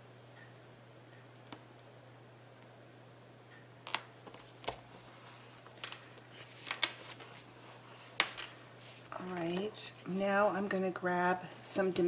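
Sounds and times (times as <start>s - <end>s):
faint steady hum: 0.0s - 12.0s
paper tapping and rustling: 3.9s - 7.5s, 8.1s - 9.8s.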